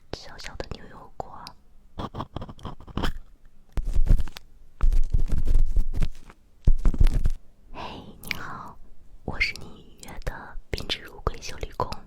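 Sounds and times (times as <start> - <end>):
scratching and rubbing on microphone: 2.0 - 7.4.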